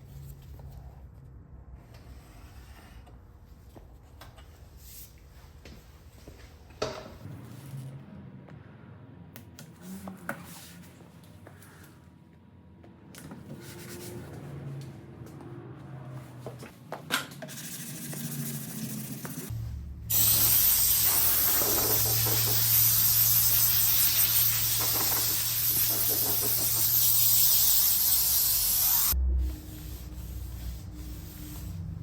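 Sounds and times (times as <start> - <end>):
low hum: 19.5 - 21.1, 29.0 - 32.0
spray gun hissing: 20.1 - 29.2.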